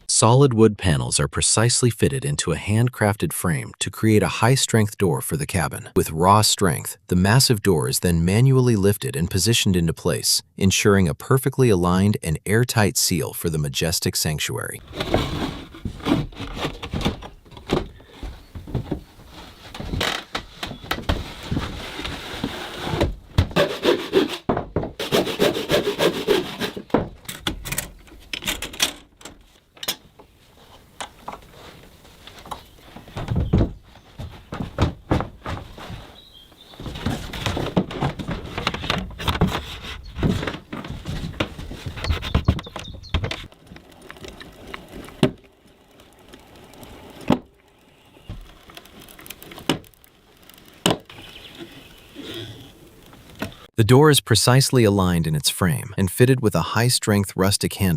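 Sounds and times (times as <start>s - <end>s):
wood scraping against wood: 14.8s - 27.3s, 29.4s - 53.8s.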